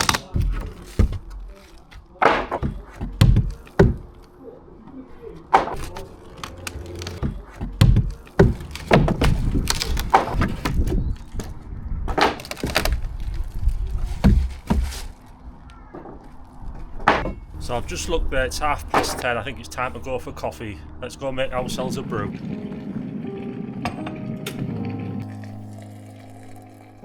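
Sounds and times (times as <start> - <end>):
boards knocking and thudding: 0.0 - 4.2, 5.5 - 13.1, 13.9 - 15.2
wood cracking and splitting: 0.0 - 4.2, 5.5 - 16.6.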